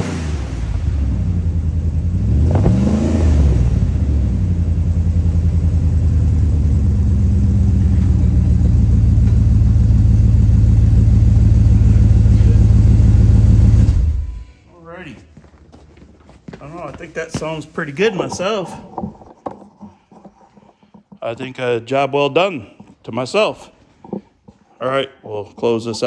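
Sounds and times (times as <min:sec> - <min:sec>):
engine revving: 0:00.0 - 0:14.5
deep exhaust idling: 0:00.0 - 0:15.2.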